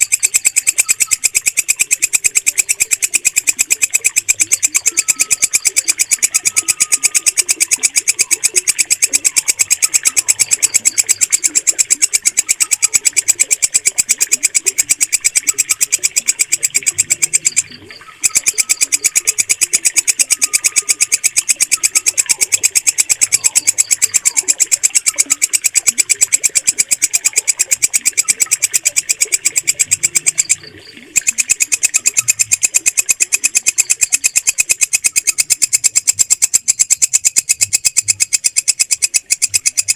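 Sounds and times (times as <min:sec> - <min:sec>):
katydid buzzing trill: 0:00.0 - 0:39.9.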